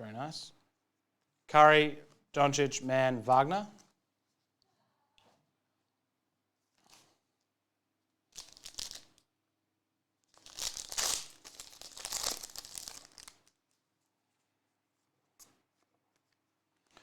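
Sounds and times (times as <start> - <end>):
wrapper tearing and crinkling: 8.3 - 9.2, 10.3 - 13.6.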